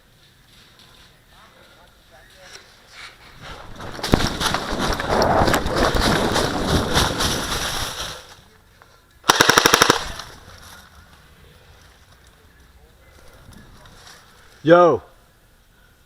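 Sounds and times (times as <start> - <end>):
airsoft guns rapid fire: 9.3 - 10.3.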